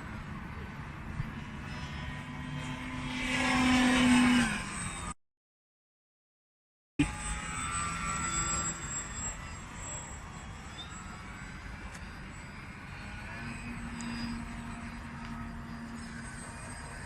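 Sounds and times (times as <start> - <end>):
model plane motor whine: 0.0 - 5.2, 7.0 - 17.0.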